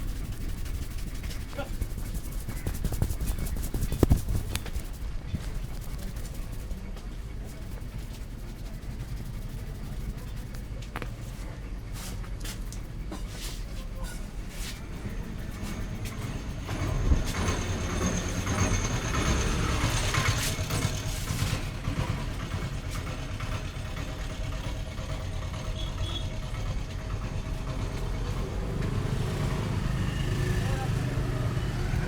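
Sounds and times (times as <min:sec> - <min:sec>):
traffic rumble: 0:00.0 - 0:32.0
vehicle passing: 0:27.5 - 0:32.0.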